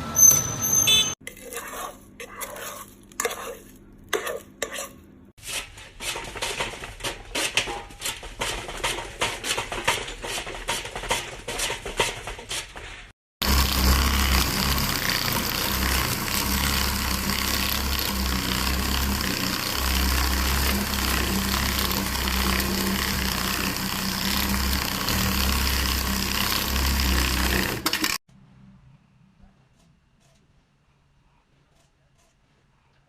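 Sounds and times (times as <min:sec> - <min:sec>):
machine humming: 0:13.4 - 0:28.2.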